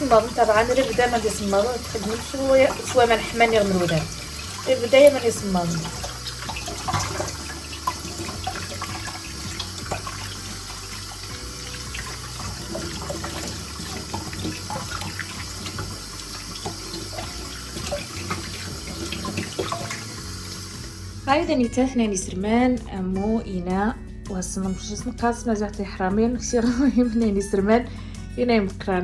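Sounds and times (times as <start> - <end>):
small clicks and splashes: 0.0 - 20.9
tap running into a sink: 0.0 - 21.2.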